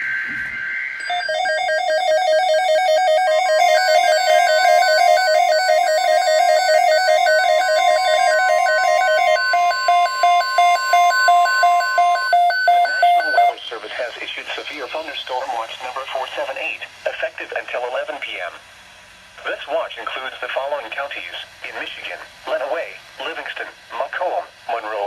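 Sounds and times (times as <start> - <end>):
high alert tone: 0.0 - 13.6
warbling electronic alarm: 0.0 - 13.6.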